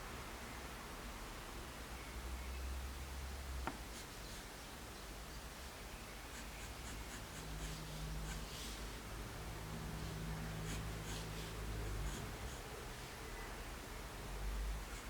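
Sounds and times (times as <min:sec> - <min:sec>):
pencil scratching on paper: 0:06.3 - 0:08.8, 0:10.4 - 0:12.7.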